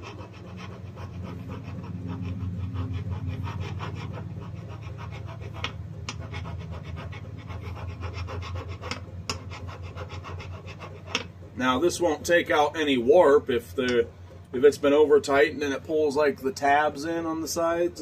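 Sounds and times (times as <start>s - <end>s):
scraper rasping on metal: 0.0s - 14.3s
steady low hum: 0.0s - 18.0s.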